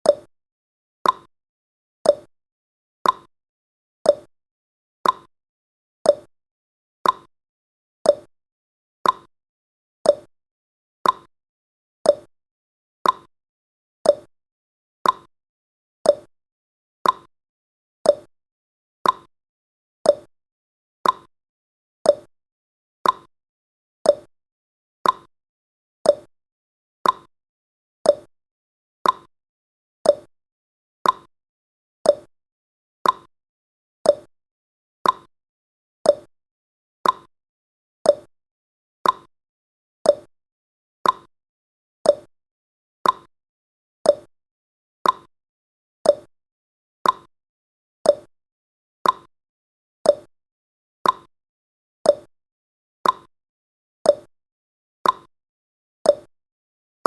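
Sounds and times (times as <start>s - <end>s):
clock ticking: 35.0s - 35.3s, 37.0s - 37.3s, 41.0s - 41.3s, 43.0s - 43.3s, 47.0s - 47.3s, 49.0s - 49.3s.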